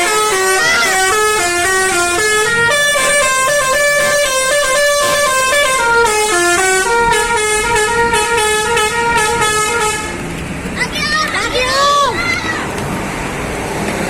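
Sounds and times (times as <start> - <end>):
multi-tone musical bus horn: 0.0 - 10.3.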